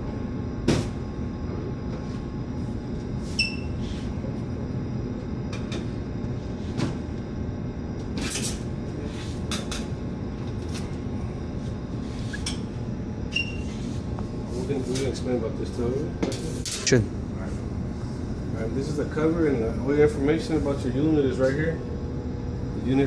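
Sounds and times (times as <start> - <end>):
short squeak: 13.3 - 13.8.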